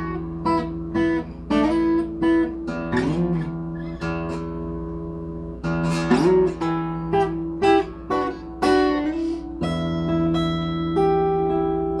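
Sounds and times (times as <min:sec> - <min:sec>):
acoustic guitar plucked notes: 0:00.0 - 0:12.0.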